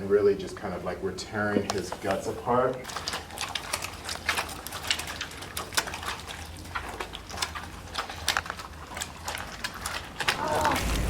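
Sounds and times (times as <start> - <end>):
fingers squishing watermelon flesh: 2.8 - 10.9.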